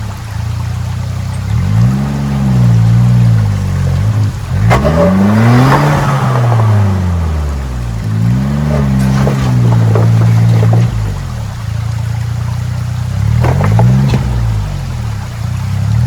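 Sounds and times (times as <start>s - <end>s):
engine revving: 1.3s - 11.4s, 12.9s - 16.0s
sharp knocks and clunks: 2.8s - 7.5s, 8.2s - 11.6s, 13.2s - 15.1s.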